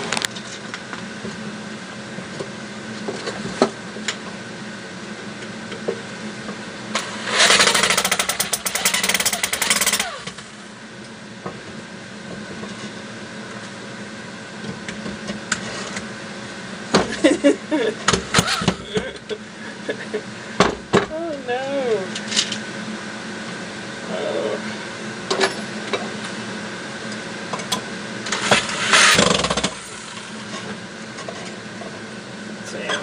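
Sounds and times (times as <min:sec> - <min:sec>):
steady low hum: 0:00.0 - 0:33.0
power tool rattling buzz: 0:06.9 - 0:10.6, 0:28.2 - 0:30.4.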